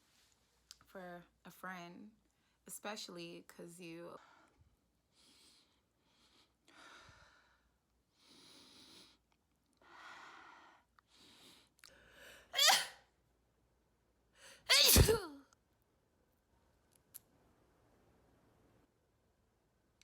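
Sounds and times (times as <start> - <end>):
person sneezing: 12.6 - 13.0, 14.7 - 15.3.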